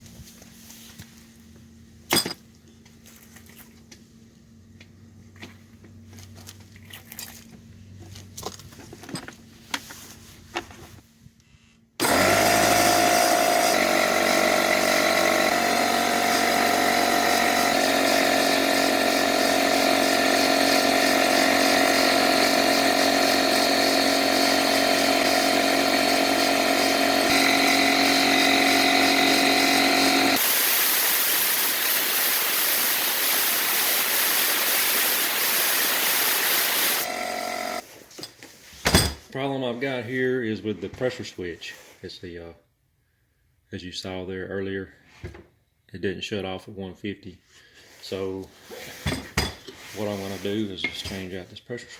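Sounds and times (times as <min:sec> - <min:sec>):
air compressor running: 0:12.0 - 0:37.8.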